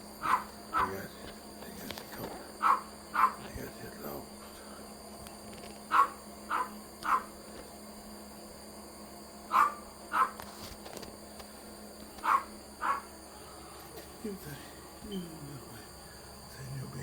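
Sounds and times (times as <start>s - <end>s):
dog barking: 0.2s - 1.0s, 2.6s - 3.4s, 5.9s - 7.3s, 9.5s - 10.4s, 12.2s - 13.1s.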